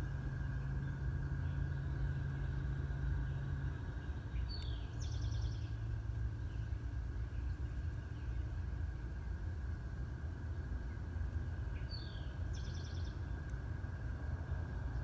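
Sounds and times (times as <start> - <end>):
low churning hum and rumble: 0.0 - 15.0
bird chirping: 4.0 - 5.8.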